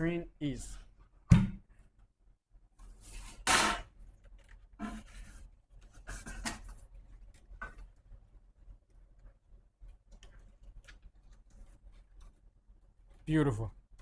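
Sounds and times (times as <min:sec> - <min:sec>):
rubbing and scraping handling noises: 0:02.8 - 0:13.4.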